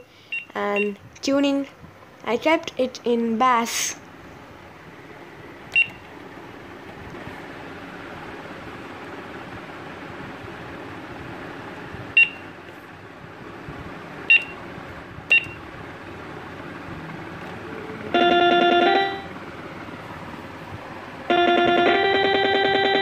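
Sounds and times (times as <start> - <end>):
short high beeps: 15.3 - 15.6, 18.2 - 19.3
synthetic keyboard note: 18.1 - 19.3, 21.3 - 23.0.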